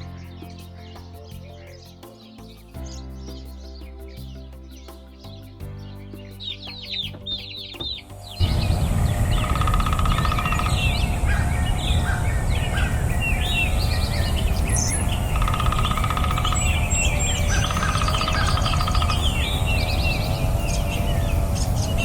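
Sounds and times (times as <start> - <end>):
birds chirping: 6.2 - 22.0
rapid buzzy bird trill: 8.4 - 22.0.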